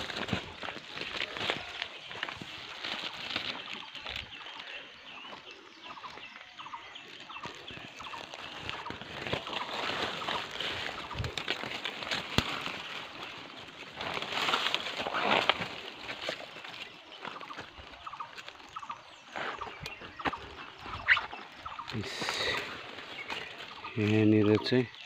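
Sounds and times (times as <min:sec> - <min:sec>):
footsteps through dry leaves: 0:00.0 - 0:25.0
twig snapping: 0:07.4 - 0:13.3.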